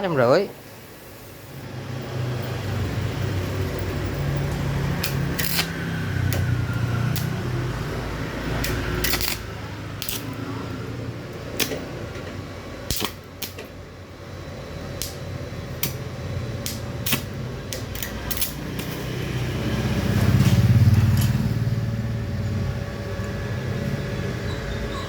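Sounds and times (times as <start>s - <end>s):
passing vehicle engine hum: 18.6s - 25.0s.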